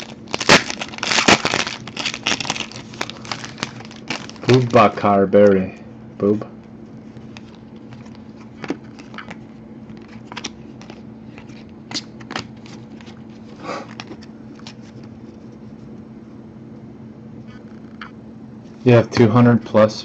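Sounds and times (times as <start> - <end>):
trading cards being flipped: 7.1 - 13.2.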